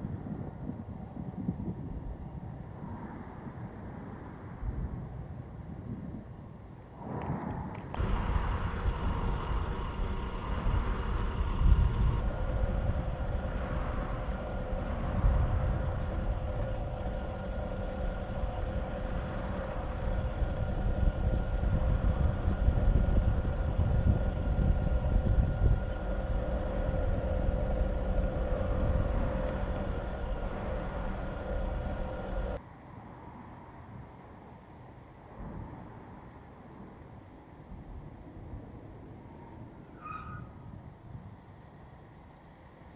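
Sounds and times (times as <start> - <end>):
tyres rumbling on rough ground: 7.0 - 32.6
electric motor whining: 7.8 - 32.6.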